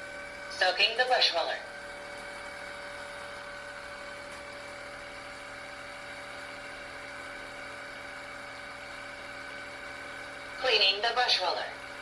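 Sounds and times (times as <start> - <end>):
floor cleaner motor and pump hum: 0.0 - 12.0.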